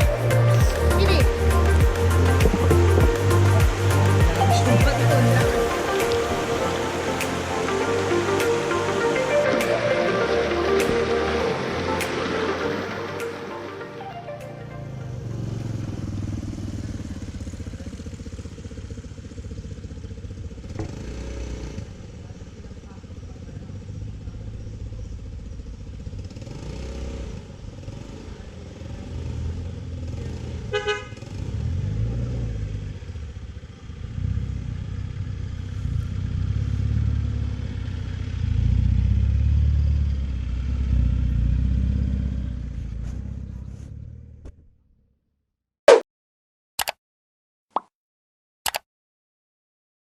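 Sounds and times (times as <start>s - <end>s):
vehicle engine rumbling: 0.0s - 44.9s
horn toot: 30.7s - 31.2s.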